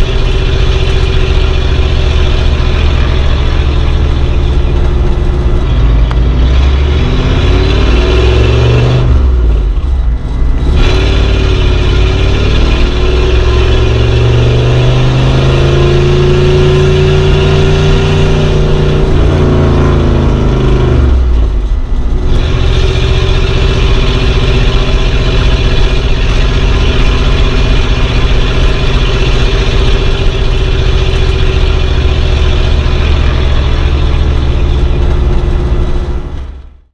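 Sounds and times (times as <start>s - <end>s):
car engine running: 0.0s - 36.9s.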